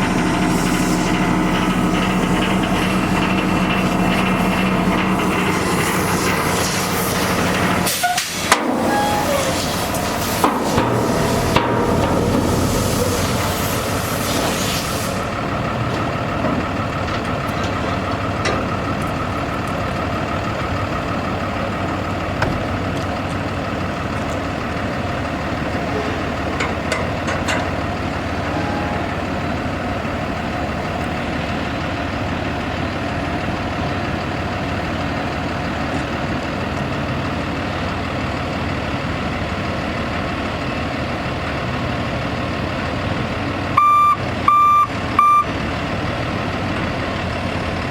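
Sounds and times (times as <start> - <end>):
diesel truck engine idling: 0.0 - 47.9
hiss: 12.4 - 15.4.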